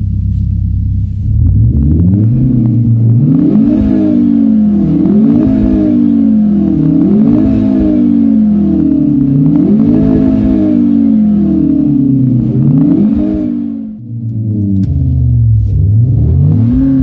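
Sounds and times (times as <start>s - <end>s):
synthesized car engine accelerating: 1.2s - 17.0s.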